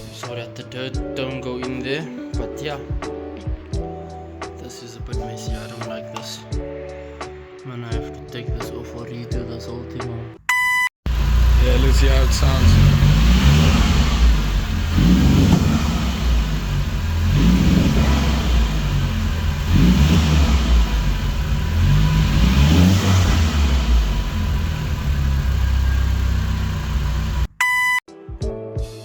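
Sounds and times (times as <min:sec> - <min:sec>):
short electronic beep: 0:10.5 - 0:10.9, 0:27.5 - 0:28.0
car engine revving: 0:11.1 - 0:27.5.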